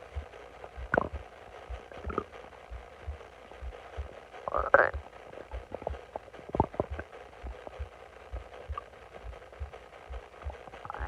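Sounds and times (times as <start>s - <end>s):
soft low thuds: 0.1s - 4.2s
stomach gurgling: 0.8s - 1.3s, 1.9s - 2.4s, 4.0s - 8.9s, 10.4s - 11.0s.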